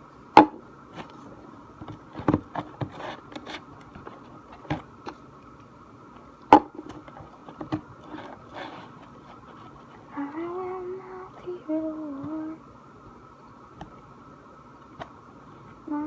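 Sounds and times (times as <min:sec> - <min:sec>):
person humming: 0:10.1 - 0:12.6.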